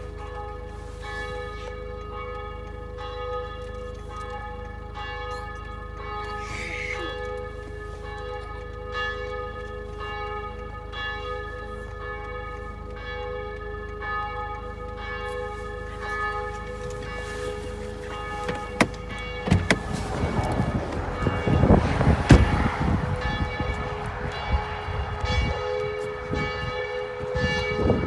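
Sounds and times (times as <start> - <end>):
church bell ringing: 0.0 - 28.0.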